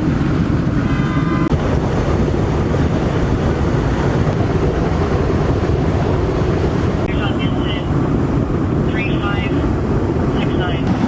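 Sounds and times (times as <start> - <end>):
water gushing from hydrant: 0.0 - 11.0.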